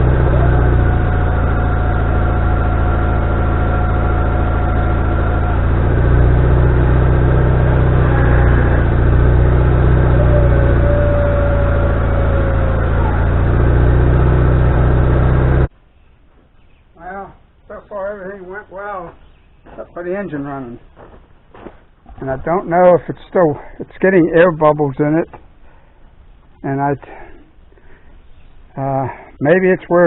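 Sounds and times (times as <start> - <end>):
sawmill gasoline engine running: 0.0 - 15.7
thin high whine: 0.0 - 15.7.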